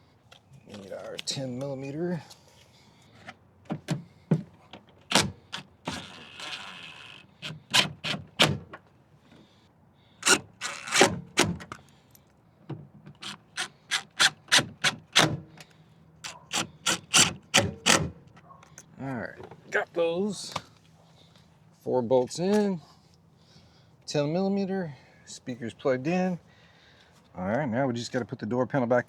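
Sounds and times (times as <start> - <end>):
scraping rasp: 10.2 - 11.1.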